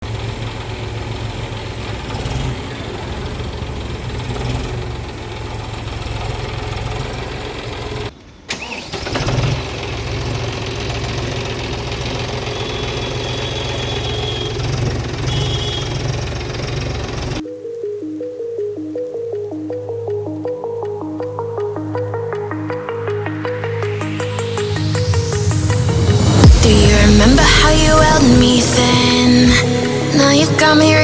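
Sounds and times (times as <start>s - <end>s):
tractor diesel engine running: 0.0s - 17.4s, 20.7s - 31.0s.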